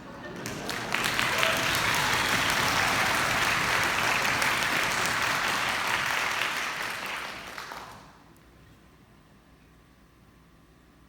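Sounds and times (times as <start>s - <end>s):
audience applauding: 0.0s - 8.1s.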